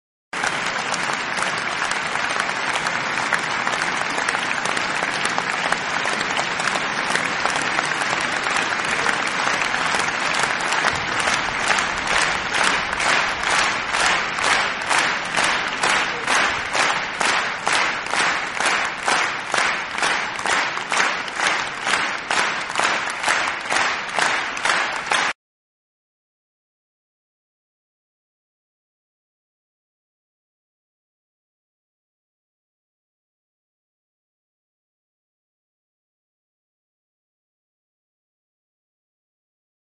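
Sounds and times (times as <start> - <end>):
crowd applauding: 0.4 - 25.4.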